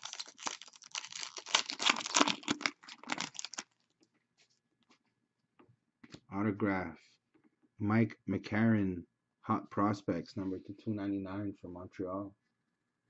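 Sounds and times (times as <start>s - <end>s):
wrapper crinkling and tearing: 0.0s - 3.9s.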